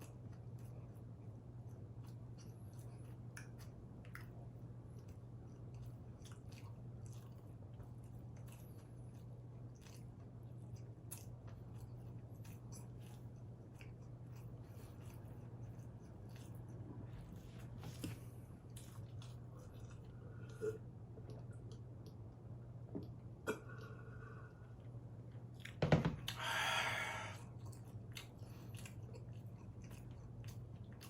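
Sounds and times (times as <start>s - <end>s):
person chewing pizza: 0.0s - 31.0s
steady low hum: 0.0s - 31.0s.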